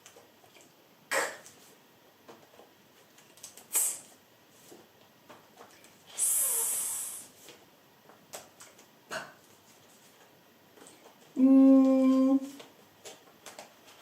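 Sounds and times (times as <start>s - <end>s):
woman making hissed s sound: 3.7s - 4.1s, 6.1s - 7.3s.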